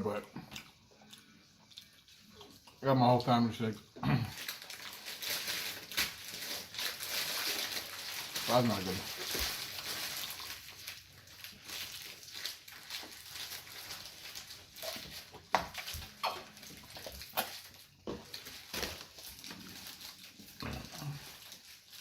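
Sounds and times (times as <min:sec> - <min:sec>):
person chewing with lip smacking: 0:00.2 - 0:02.8.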